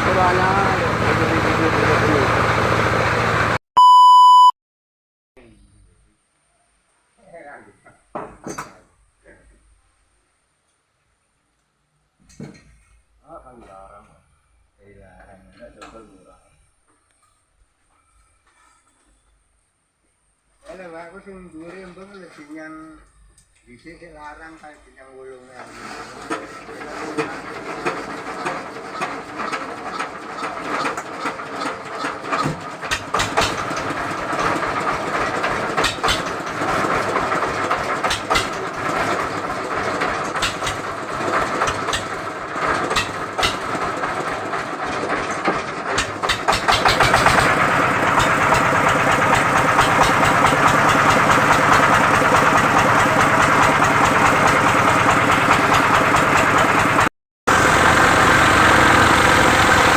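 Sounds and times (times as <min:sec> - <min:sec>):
engine running: 0:00.0 - 0:03.6, 0:25.4 - 0:59.9
knocks and clatter: 0:26.2 - 0:57.1.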